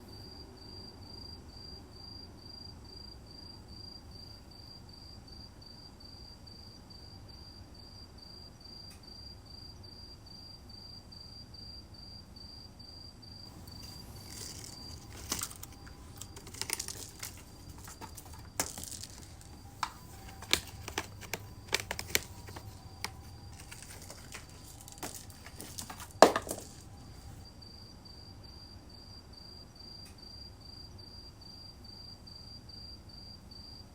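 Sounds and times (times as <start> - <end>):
cricket chirping: 0.0 - 33.9
crinkling and rustling: 13.5 - 27.4.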